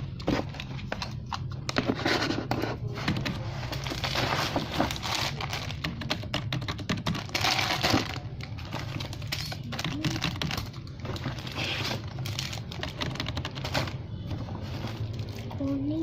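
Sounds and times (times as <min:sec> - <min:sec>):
packaging rustling: 0:00.0 - 0:06.2, 0:07.0 - 0:15.8
plastic toys clicking and tapping: 0:04.6 - 0:14.0.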